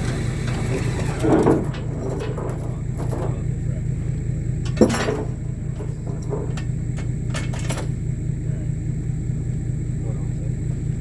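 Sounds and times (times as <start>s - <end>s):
metal clank: 0.0s - 4.0s, 4.6s - 8.3s
engine running: 0.0s - 11.0s
light metal clinks: 0.5s - 3.8s, 4.6s - 8.2s.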